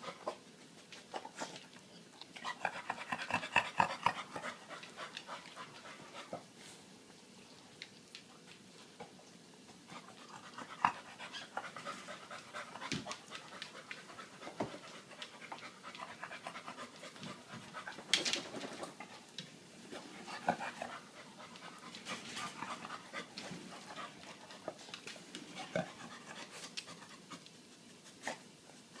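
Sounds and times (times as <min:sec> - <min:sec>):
dog panting: 0:02.3 - 0:06.6, 0:09.7 - 0:19.3, 0:20.0 - 0:28.4.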